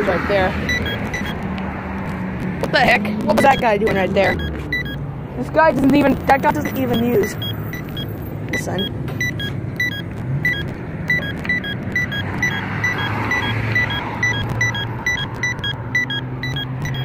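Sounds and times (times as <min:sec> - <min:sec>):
traffic: 0:00.0 - 0:17.0
vehicle passing: 0:00.0 - 0:17.0
pedestrian signal beeping tick: 0:00.7 - 0:01.6, 0:03.3 - 0:05.0, 0:06.4 - 0:17.0.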